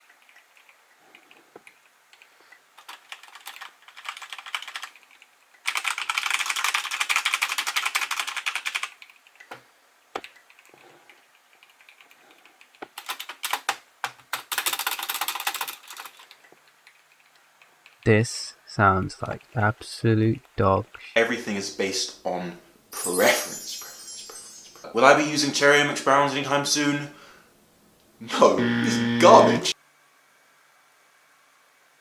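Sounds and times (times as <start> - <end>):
typing on mechanical keyboard: 0.0 - 9.5, 10.2 - 18.0.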